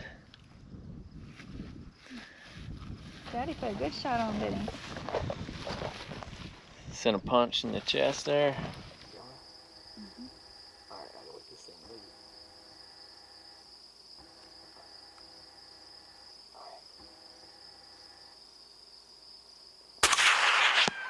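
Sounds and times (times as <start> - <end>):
high-pitched insect drone: 9.0 - 18.6.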